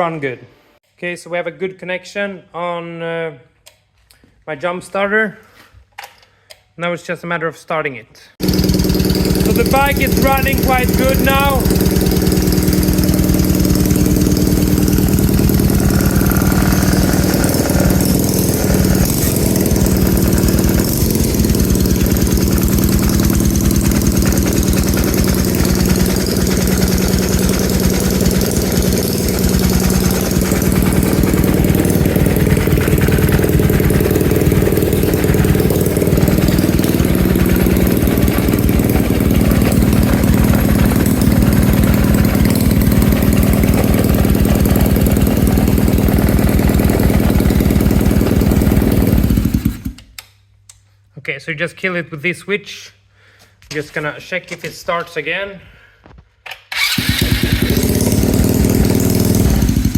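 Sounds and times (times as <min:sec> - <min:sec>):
small petrol engine running: 0:08.4 - 0:50.0, 0:56.7 - 0:59.9.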